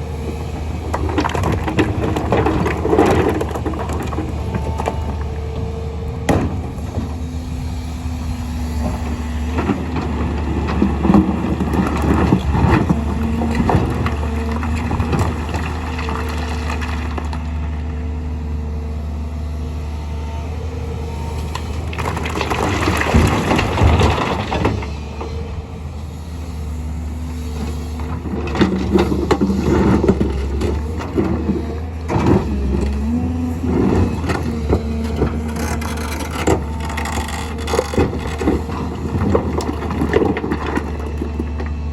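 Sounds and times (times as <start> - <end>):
excavator diesel engine: 0.0 - 41.9
stones clattering and scraping: 0.8 - 5.4, 21.6 - 24.9, 28.0 - 41.7.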